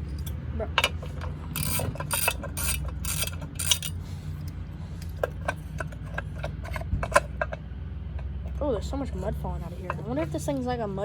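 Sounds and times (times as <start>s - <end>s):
ratchet wrench rasping: 0.0s - 7.5s
low steady hum: 0.0s - 11.0s.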